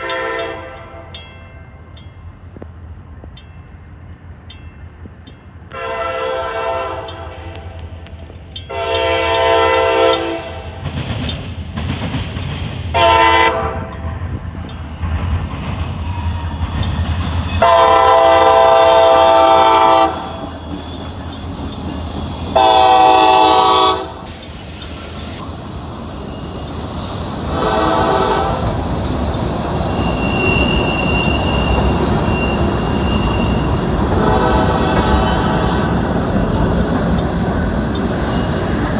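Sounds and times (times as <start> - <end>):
locomotive air horn blasts: 0.0 - 1.1, 5.7 - 7.7, 8.7 - 10.7, 13.0 - 14.1, 17.6 - 20.4, 22.6 - 24.3, 27.5 - 28.7, 34.1 - 35.6
train rumbling by: 0.0 - 38.9
wheels clacking on rails: 0.0 - 38.9.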